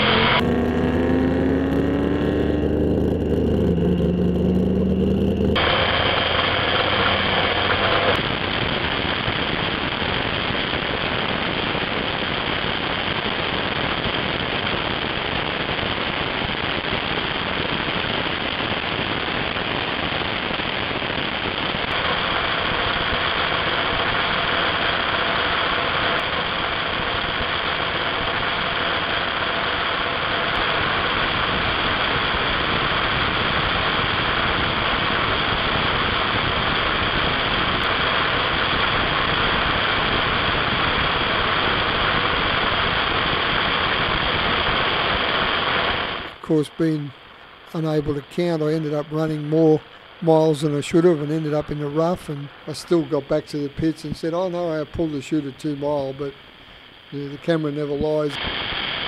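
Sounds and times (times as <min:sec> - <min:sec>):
engine roaring at speed: 0:00.0 - 0:08.2
pitched engine sound falling: 0:00.0 - 0:08.2
wind roar: 0:00.0 - 0:08.7.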